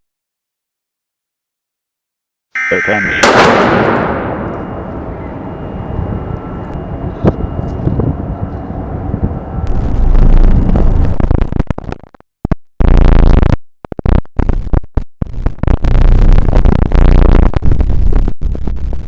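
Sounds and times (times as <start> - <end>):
synthesizer drone: 2.6 - 11.1
harsh distorted electronic noise: 9.7 - 19.0.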